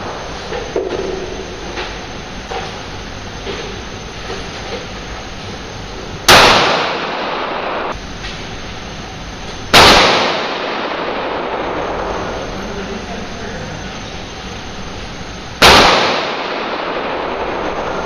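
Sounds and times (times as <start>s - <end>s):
pistol shots: 6.3s - 7.9s, 9.7s - 11.8s, 15.6s - 17.6s.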